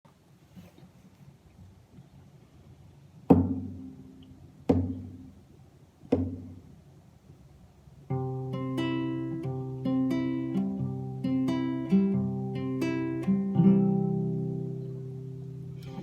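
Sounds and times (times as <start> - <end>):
acoustic guitar chord strummed: 8.1 - 16.0.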